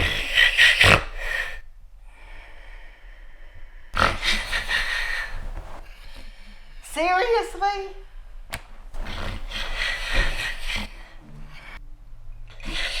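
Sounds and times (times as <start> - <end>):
man snoring: 4.0 - 5.6.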